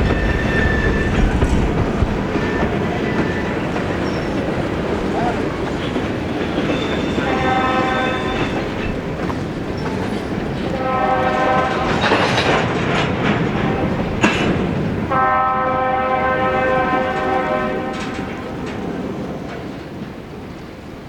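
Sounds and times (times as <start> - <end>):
passing train wheels and engine: 0.0 - 21.0
locomotive air horn: 6.7 - 8.8, 10.7 - 12.4, 15.1 - 18.6.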